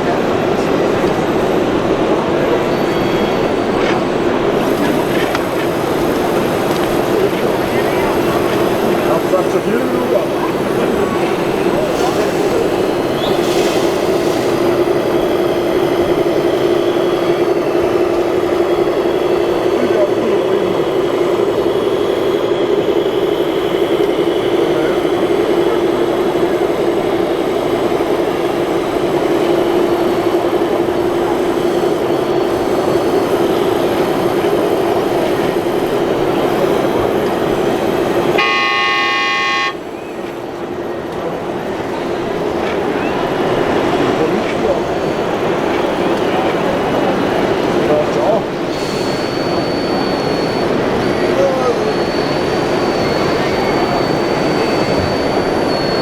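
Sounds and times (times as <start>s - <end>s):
voices murmuring: 0.0s - 56.0s
horn sounding: 38.2s - 40.0s.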